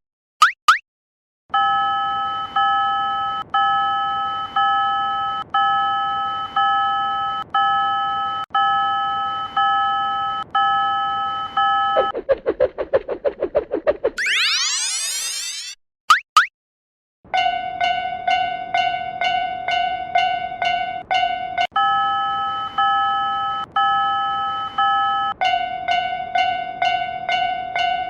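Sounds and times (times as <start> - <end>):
quick rising chirps: 12.0 - 16.5.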